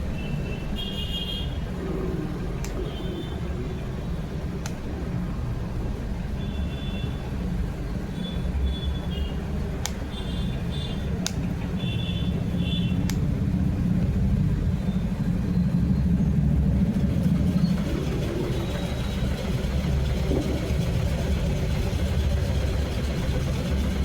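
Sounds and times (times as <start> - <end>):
steady low rumble: 11.0 - 24.0.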